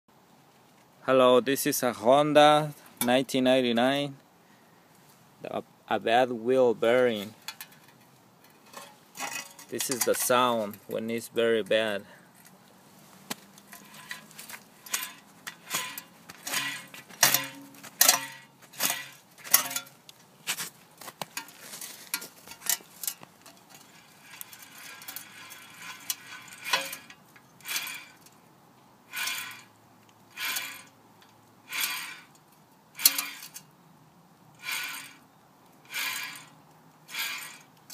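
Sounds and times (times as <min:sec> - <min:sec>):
wheel bearing grinding clank: 0:13.7 - 0:20.0, 0:23.8 - 0:28.3, 0:29.1 - 0:29.7, 0:30.3 - 0:30.9, 0:31.7 - 0:32.4, 0:33.0 - 0:33.6, 0:35.9 - 0:36.5.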